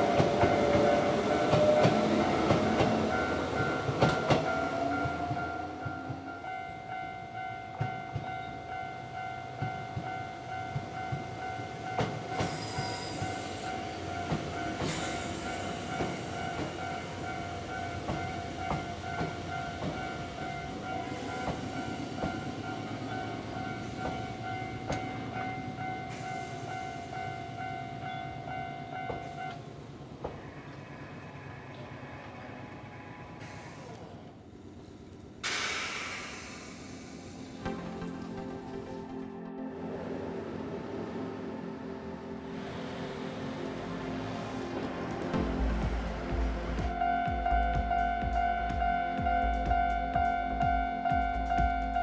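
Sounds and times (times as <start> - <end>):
level-crossing warning bell: 0.0 - 30.0, 37.7 - 52.0.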